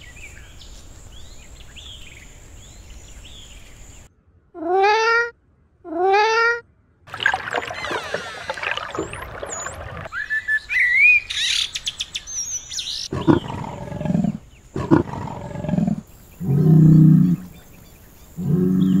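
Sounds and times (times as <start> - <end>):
loud pitched animal call: 7.4 - 10.1
high animal whistles and chirps: 7.6 - 13.6
low animal roars: 13.1 - 17.5, 18.4 - 19.0.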